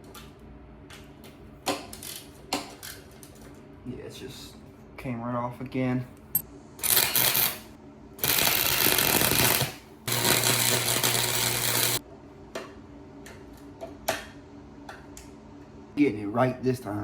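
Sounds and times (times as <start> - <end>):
arc welder crackling: 6.8 - 12.0.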